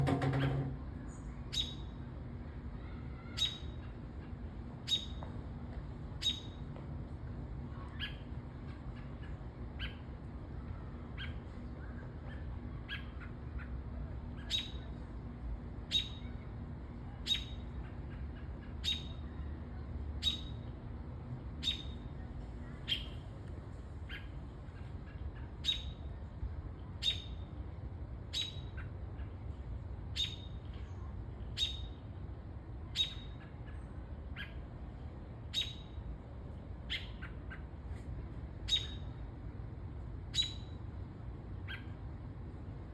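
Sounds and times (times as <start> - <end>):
low background hum: 0.0 - 42.9
small bird chirping: 1.1 - 2.0, 2.8 - 5.2, 6.2 - 6.6, 8.9 - 10.1, 14.4 - 14.9, 15.9 - 16.4, 17.2 - 19.4, 20.2 - 20.7, 21.6 - 22.2, 22.8 - 23.3, 24.1 - 26.2, 27.0 - 27.5, 28.3 - 29.4, 30.1 - 30.8, 31.5 - 32.0, 32.9 - 34.6, 35.5 - 36.0, 36.9 - 37.6, 38.6 - 39.2, 40.3 - 40.8, 41.6 - 42.0.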